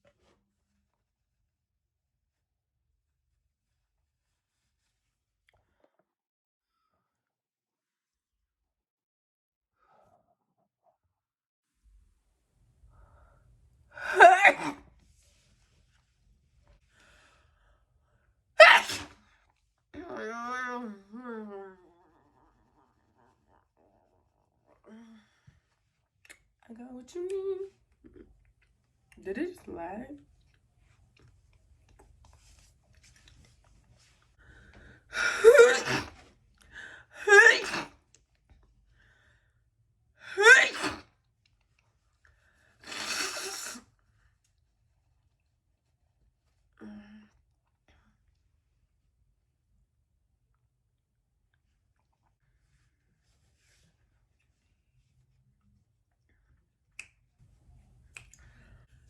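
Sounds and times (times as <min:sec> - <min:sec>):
woman sneezing: 0:14.0 - 0:14.8, 0:18.6 - 0:19.2, 0:35.2 - 0:36.2, 0:37.2 - 0:37.9, 0:40.3 - 0:41.0.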